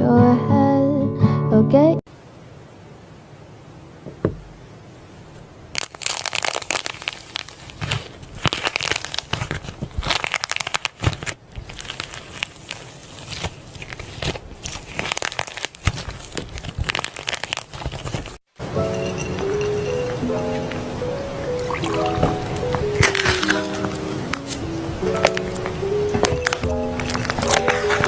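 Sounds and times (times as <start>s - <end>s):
low hiss: 2.1s - 8.5s, 18.6s - 28.0s
crinkling and rustling: 5.3s - 28.0s.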